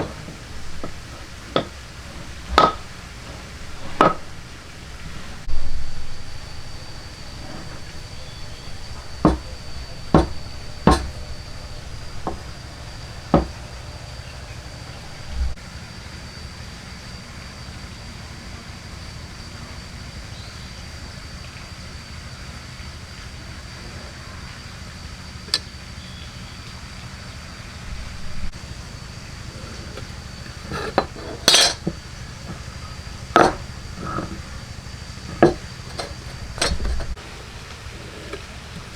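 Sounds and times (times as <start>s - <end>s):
tools knocking on wood: 0.0s - 13.8s, 29.5s - 37.2s
faint high whine: 0.0s - 38.9s.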